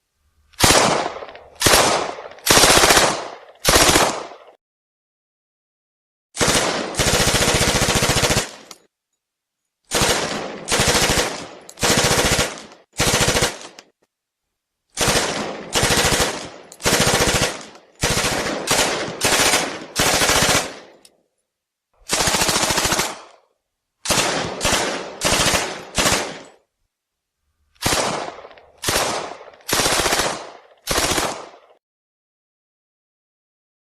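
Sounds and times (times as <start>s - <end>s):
submachine gun bursts: 0.6s - 4.2s, 15.0s - 20.8s.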